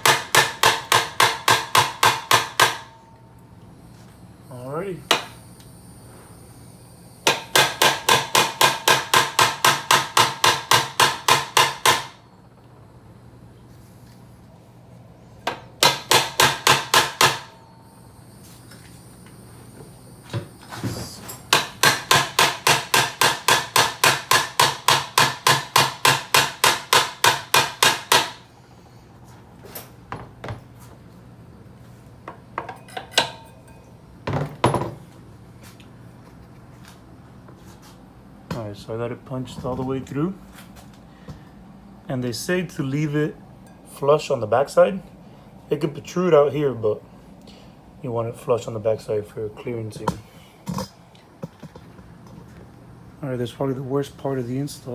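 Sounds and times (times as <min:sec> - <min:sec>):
hammer striking metal punch: 0:00.0 - 0:03.0, 0:05.1 - 0:05.4, 0:07.2 - 0:12.2, 0:15.4 - 0:17.6, 0:21.5 - 0:28.4, 0:32.6 - 0:35.0.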